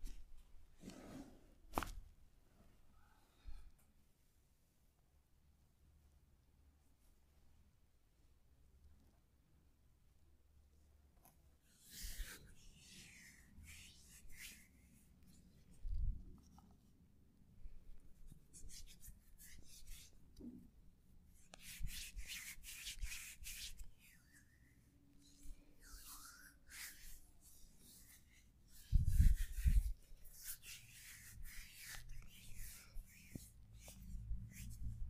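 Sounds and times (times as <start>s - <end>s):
hands rubbing over skin and clothing: 11.7s - 16.8s, 18.0s - 20.6s, 21.3s - 35.0s.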